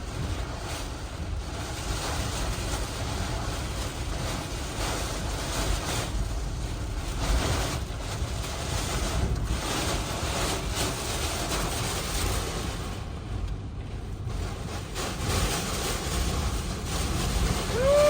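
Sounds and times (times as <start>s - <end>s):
wind buffeting microphone: 0.0s - 18.0s
hurricane winds rushing: 14.3s - 18.0s.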